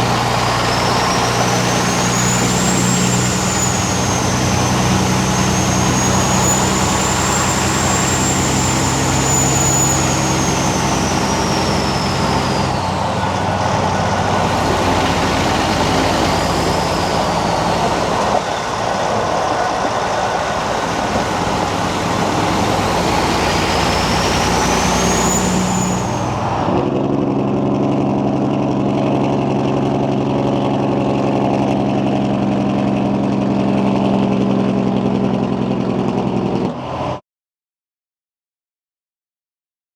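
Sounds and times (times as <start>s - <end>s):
turbo whistle: 0.0s - 26.7s
diesel truck engine running: 0.0s - 36.7s.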